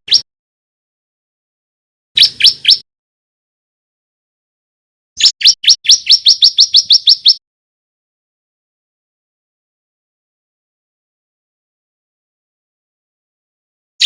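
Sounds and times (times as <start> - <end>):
bird calling rising notes: 2.2 - 2.8.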